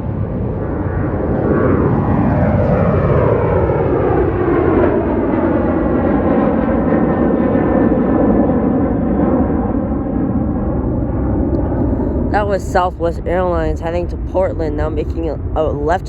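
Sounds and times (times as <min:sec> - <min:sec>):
jet engine roar: 0:00.0 - 0:16.0.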